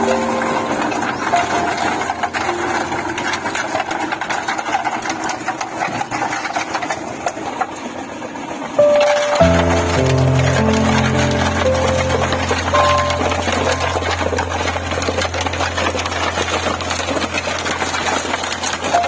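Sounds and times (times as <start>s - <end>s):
faint background music: 0.0s - 4.0s, 8.8s - 17.4s
small engine rattling: 0.0s - 19.0s.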